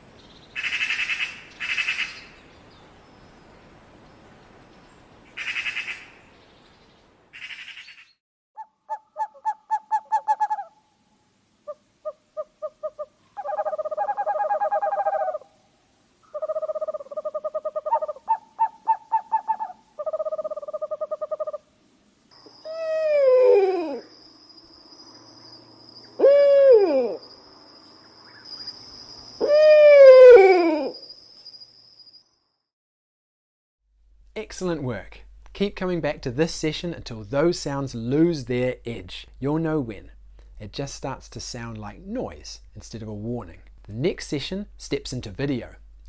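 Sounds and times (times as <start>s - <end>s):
bird calls: 0.2s - 3.3s, 4.7s - 8.2s.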